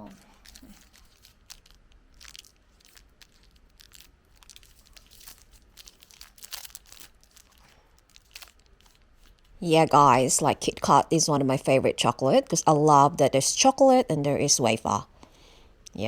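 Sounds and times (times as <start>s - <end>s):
crunchy chewing: 0.1s - 9.6s.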